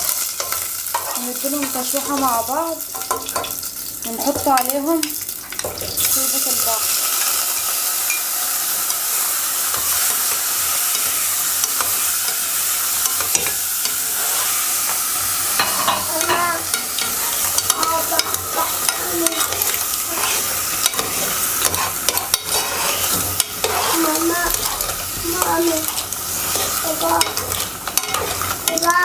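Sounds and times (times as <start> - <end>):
seafood sizzling in a pan: 0.0 - 29.0
utensil scraping a pan: 0.4 - 2.4, 13.0 - 29.0.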